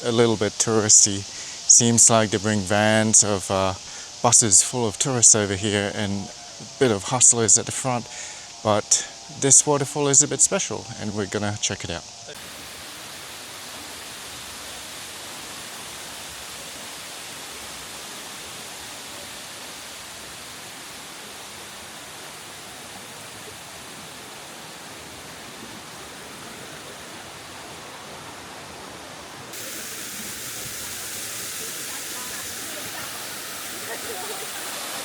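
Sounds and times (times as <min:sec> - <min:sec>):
waterfall rushing: 0:12.3 - 0:35.0.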